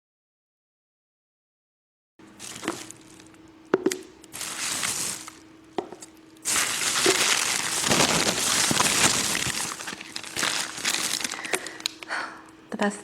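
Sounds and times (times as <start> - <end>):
rustling crinkling hiss: 2.2 - 12.6.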